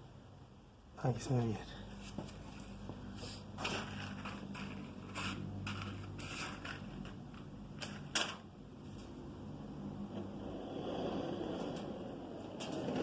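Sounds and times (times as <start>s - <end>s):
steady low hum: 0.0s - 13.0s
hard objects clicking on a workbench: 3.6s - 8.5s.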